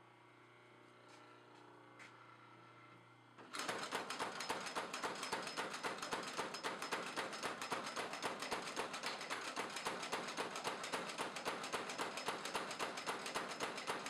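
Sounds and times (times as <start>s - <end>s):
power hammer striking: 4.5s - 14.0s.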